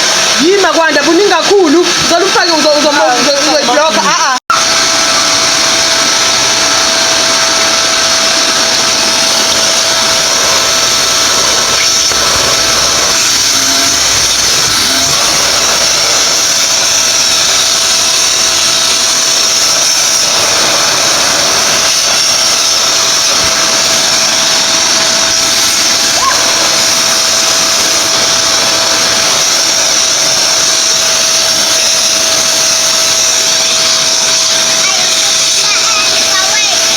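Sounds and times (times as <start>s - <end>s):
vacuum cleaner running: 0.0s - 36.9s.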